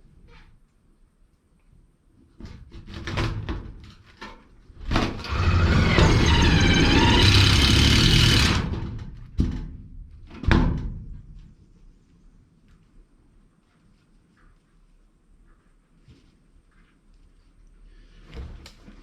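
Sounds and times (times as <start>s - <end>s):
power drill driving screw into metal: 5.0s - 8.8s.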